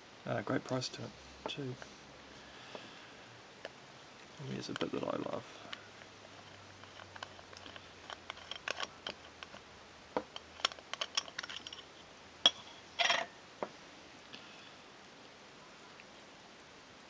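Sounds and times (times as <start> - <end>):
small metal clicks and taps: 6.4 - 9.6, 10.2 - 11.8.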